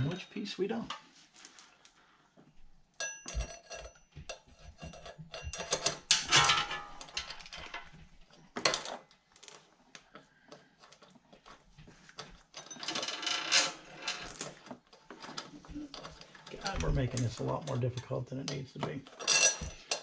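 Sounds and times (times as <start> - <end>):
roller chain clinking and rattling: 3.0 - 9.6, 12.2 - 20.0.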